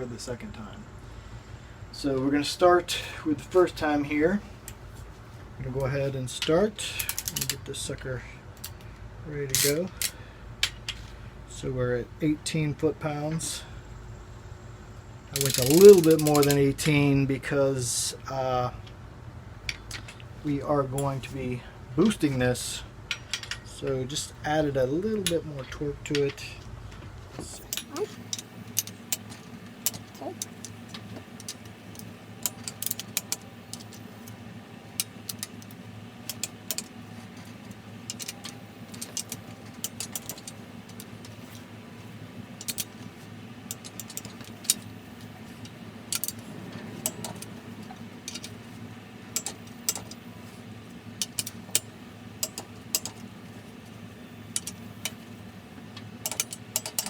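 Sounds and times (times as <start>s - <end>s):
torque wrench ratcheting: 7.0s - 7.6s, 15.4s - 16.6s, 27.7s - 34.4s, 35.0s - 37.0s, 37.7s - 41.4s, 42.6s - 43.0s, 43.7s - 45.0s, 45.6s - 47.6s, 49.3s - 50.2s, 51.2s - 53.2s, 54.5s - 55.2s, 56.2s - 57.0s.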